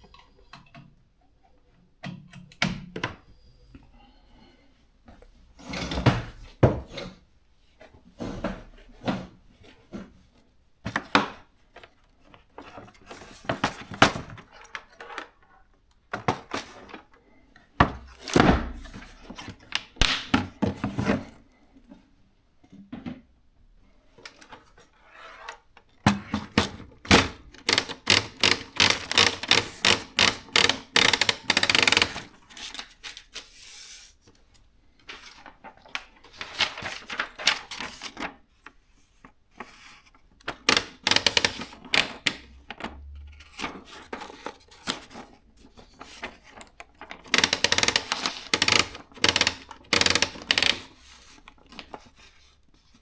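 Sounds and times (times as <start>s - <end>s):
typewriter keys clicking: 27.2s - 32.3s, 40.5s - 42.4s, 47.3s - 50.9s.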